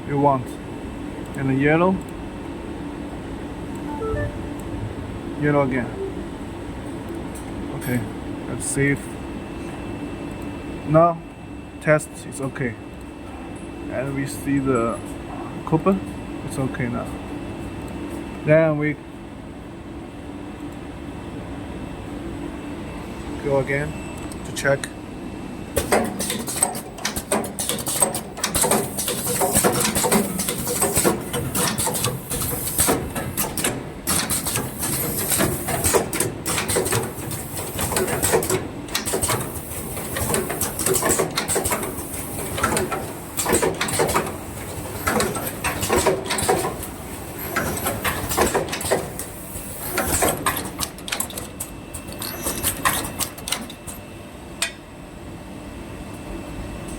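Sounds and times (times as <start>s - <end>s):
machine clattering: 25.8s - 53.7s.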